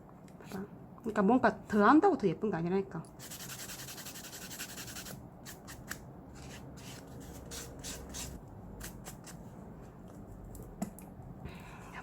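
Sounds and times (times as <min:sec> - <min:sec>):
tool rubbing on fingernail: 0:03.2 - 0:08.4.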